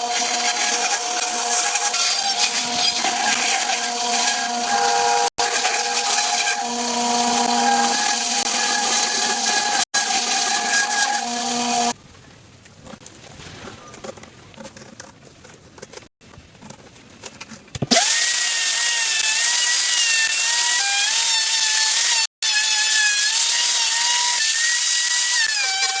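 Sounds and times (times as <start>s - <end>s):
power tool whining: 0.0s - 12.0s, 17.9s - 26.0s
crackling and scraping: 0.0s - 18.1s.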